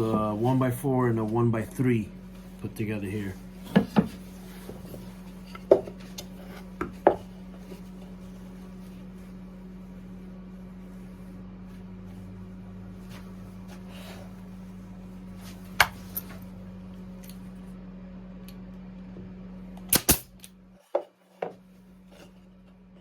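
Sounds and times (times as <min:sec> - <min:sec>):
low hum: 0:00.0 - 0:20.8
nail gun firing into wood: 0:19.9 - 0:20.5.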